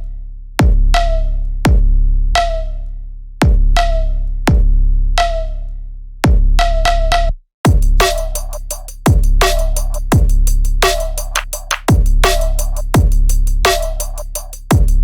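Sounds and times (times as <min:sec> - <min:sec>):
electronic music with drum beat: 0:07.7 - 0:15.0.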